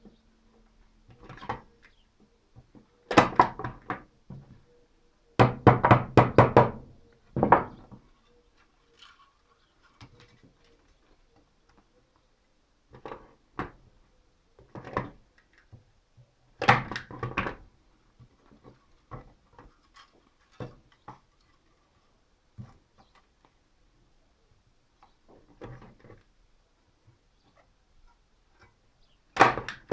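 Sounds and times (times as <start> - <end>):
knocks and clicks on wooden frame: 5.4 - 8.0.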